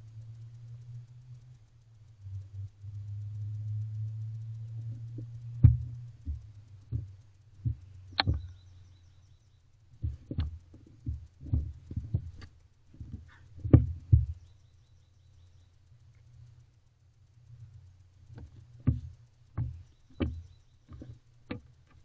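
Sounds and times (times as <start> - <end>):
low hum: 0.0 - 22.0.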